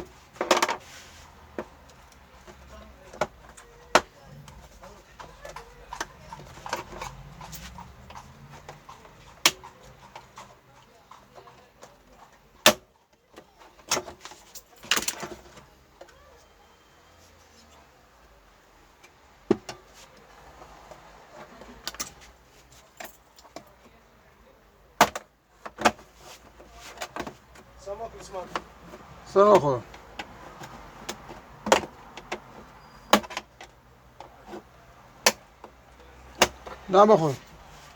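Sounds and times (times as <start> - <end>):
clicks of tools and plastic: 11.8 - 16.2.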